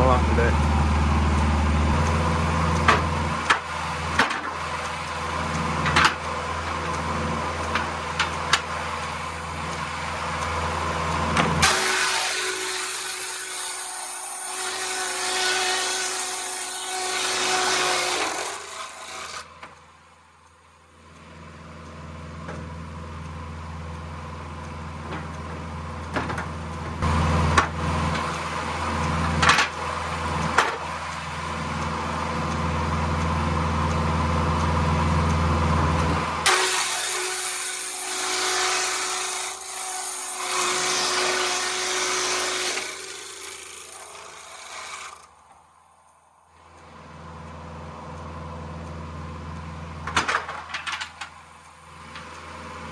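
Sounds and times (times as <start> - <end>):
sawmill edger cutting board: 0.0 - 19.8, 36.4 - 45.6
machine humming unloaded: 25.0 - 45.8.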